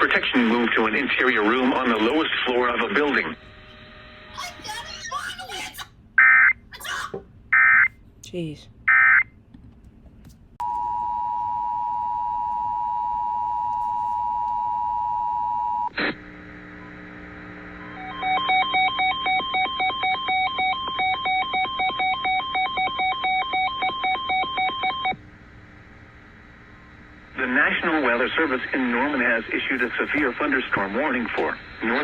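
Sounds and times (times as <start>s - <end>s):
low hum: 10.6s - 32.0s
steady dual tone: 10.6s - 32.0s.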